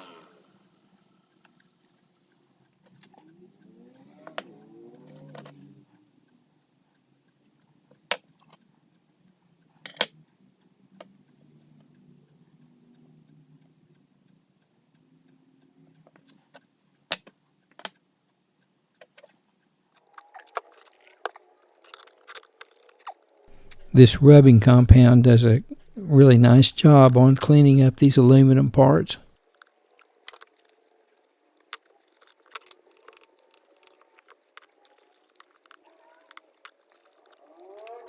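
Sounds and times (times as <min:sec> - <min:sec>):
small metal parts clinking: 0:20.1 - 0:24.0, 0:25.6 - 0:26.0, 0:29.5 - 0:38.0
faint low hum: 0:23.5 - 0:29.3.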